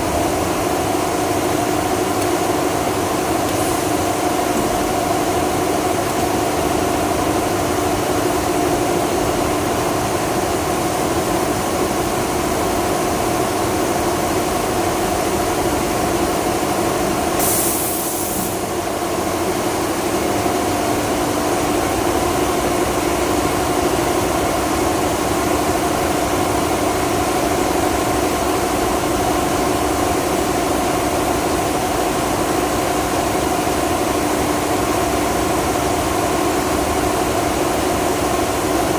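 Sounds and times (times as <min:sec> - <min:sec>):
brief high hiss: 0:17.4 - 0:18.7.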